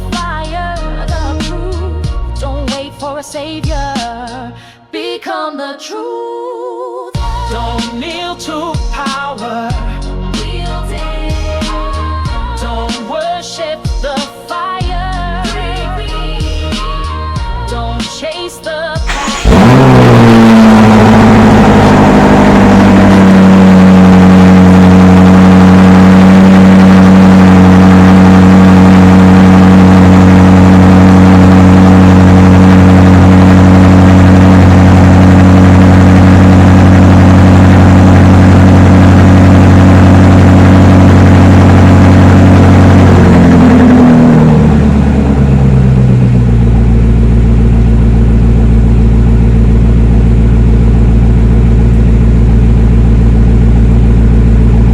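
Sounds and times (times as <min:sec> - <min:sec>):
car engine revving then idling: 0:19.1 - 0:54.9.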